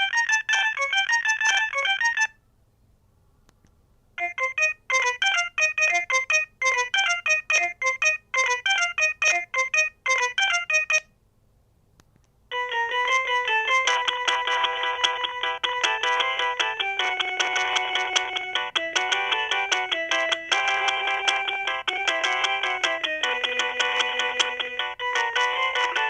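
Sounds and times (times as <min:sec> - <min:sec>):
held chord-like ringtone: 0:00.0 - 0:02.3, 0:04.2 - 0:11.1, 0:12.5 - 0:26.0
phone ringtone: 0:00.0 - 0:02.4, 0:04.2 - 0:11.1, 0:12.5 - 0:26.0
bright melody of short notes: 0:04.2 - 0:11.0.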